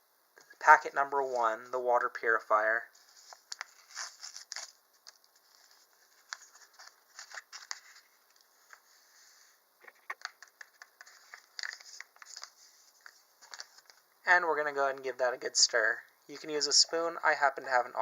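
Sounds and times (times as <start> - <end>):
packet crinkling: 3.0 - 8.9, 9.8 - 14.1.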